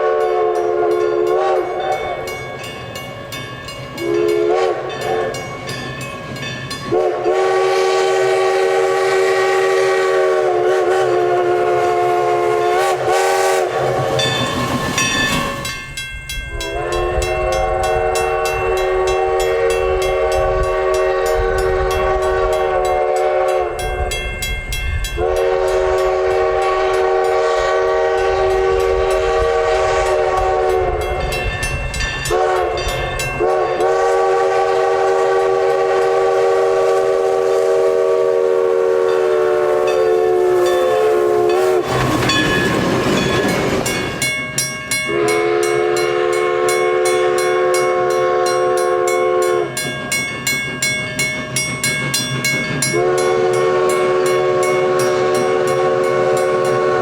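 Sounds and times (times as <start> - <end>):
steam locomotive whistle: 0.0 - 2.4, 3.9 - 5.7, 6.8 - 15.9, 16.5 - 24.3, 25.1 - 44.3, 45.0 - 49.9, 52.8 - 57.0
steam rushing hiss: 6.9 - 15.9, 32.3 - 45.2.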